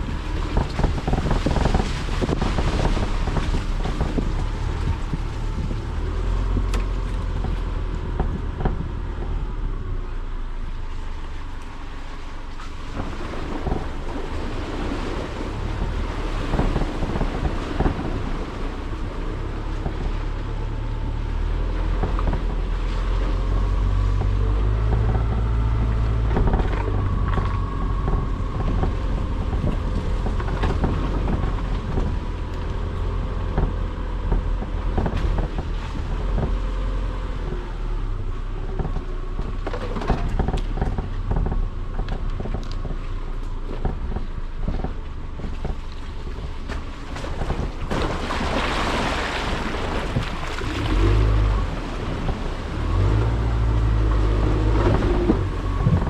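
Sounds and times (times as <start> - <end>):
small knocks: 0.0 - 9.5
wind buffeting microphone: 0.0 - 10.4, 12.0 - 56.0
car engine and road rumble: 0.0 - 56.0.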